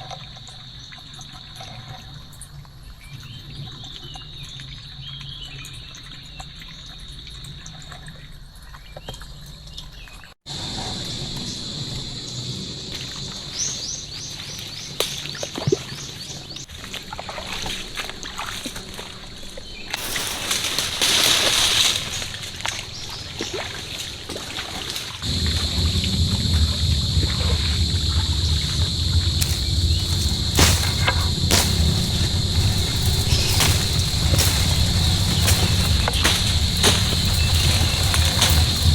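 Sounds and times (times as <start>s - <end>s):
water sloshing and trickling: 16.7s - 25.2s, 29.4s - 38.9s
low rumble: 25.3s - 38.9s.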